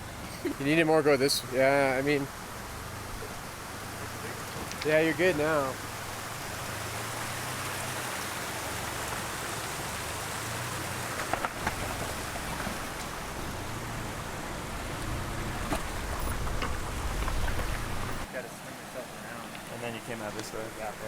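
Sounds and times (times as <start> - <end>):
steady rushing hiss: 0.0 - 21.0
pickup engine at low revs: 1.4 - 18.3
gravel clicking under tyres: 1.7 - 18.3, 19.3 - 21.0.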